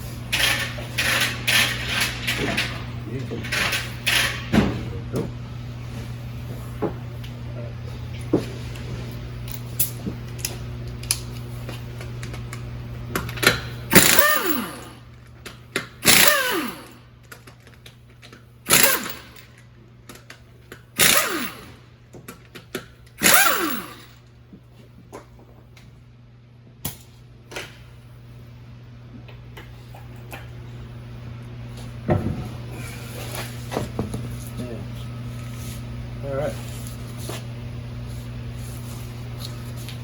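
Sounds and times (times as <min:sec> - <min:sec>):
steady low hum: 0:00.0 - 0:40.0
impact wrench bursts: 0:13.4 - 0:15.1, 0:15.8 - 0:17.1, 0:18.6 - 0:19.6, 0:20.8 - 0:21.9, 0:23.2 - 0:24.2.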